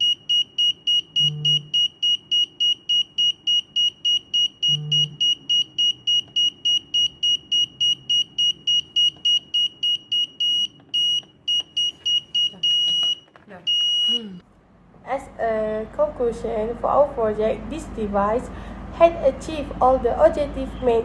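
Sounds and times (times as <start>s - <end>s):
gas detector alarm beeping: 0.0s - 14.4s.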